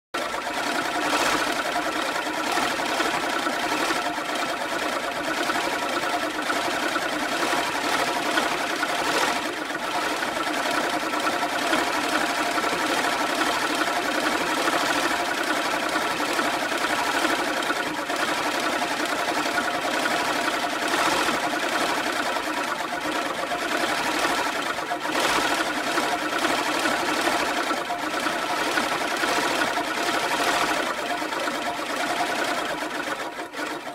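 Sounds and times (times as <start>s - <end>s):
push lawnmower whirring: 0.2s - 33.9s.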